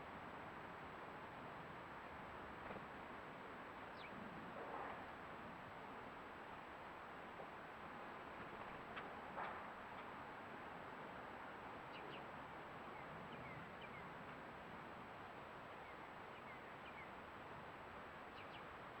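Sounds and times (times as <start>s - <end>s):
faint outdoor background hiss: 0.0s - 19.0s.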